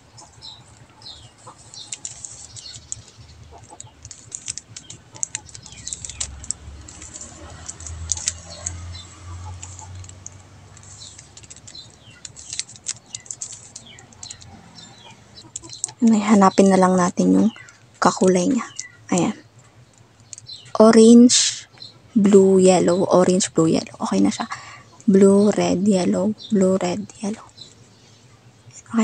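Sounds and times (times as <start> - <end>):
puzzle cube plastic clicks: 1.6 - 9.0, 9.6 - 14.5, 15.4 - 16.1.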